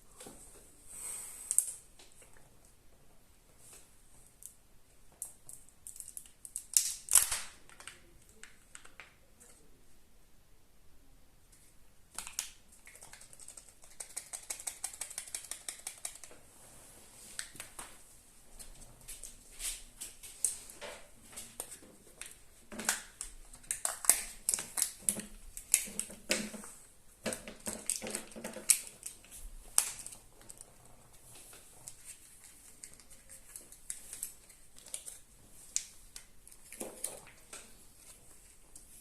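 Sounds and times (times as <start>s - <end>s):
plastic capsule clicking and snapping: 5.2s - 9.2s.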